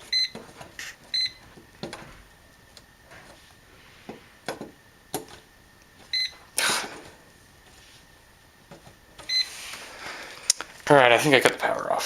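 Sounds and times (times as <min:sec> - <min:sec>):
voltage tester beep: 0:00.1 - 0:00.4, 0:01.1 - 0:01.5, 0:06.1 - 0:06.4, 0:09.2 - 0:09.5.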